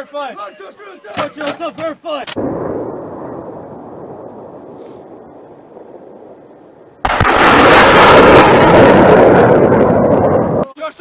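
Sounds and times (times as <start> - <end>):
artillery gun shot: 2.3 - 10.5.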